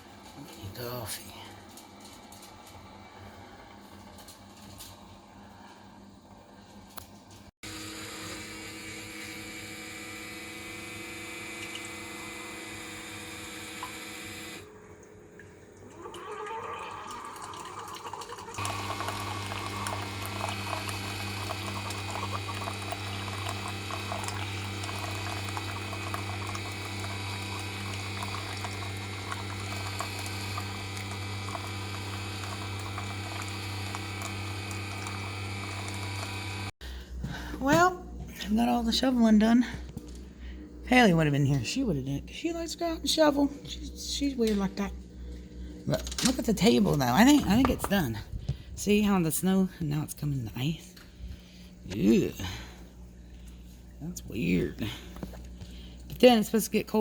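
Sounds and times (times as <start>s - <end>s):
coffee maker hum: 0.0s - 37.7s, 51.2s - 57.0s
coffee trickling into cup: 15.4s - 36.7s
deep pump hum: 18.4s - 38.4s, 46.6s - 49.3s.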